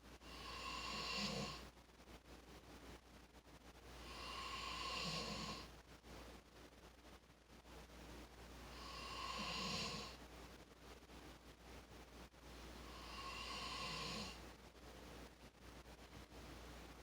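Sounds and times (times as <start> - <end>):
person snoring: 0.2 - 1.6, 4.0 - 5.7, 8.7 - 10.2, 12.8 - 14.4.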